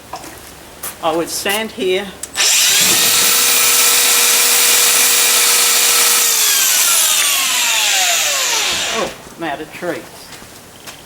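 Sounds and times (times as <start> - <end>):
power grinder whining: 2.4 - 9.2.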